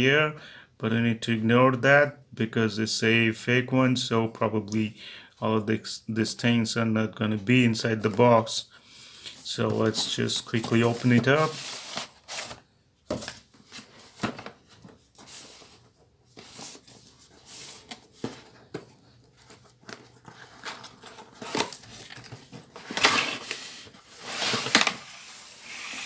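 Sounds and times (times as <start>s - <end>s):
packing rustling and sliding: 9.7s - 12.6s, 19.4s - 26.0s
cardboard box being opened: 9.7s - 14.5s.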